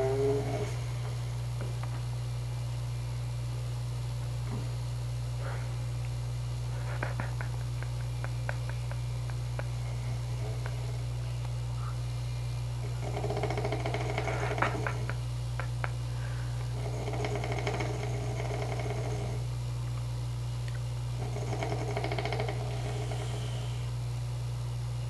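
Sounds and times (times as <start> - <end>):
man snoring: 0.0 - 1.0, 9.6 - 11.3, 12.8 - 15.2, 16.6 - 19.5, 21.1 - 24.0
steady low hum: 0.0 - 25.0.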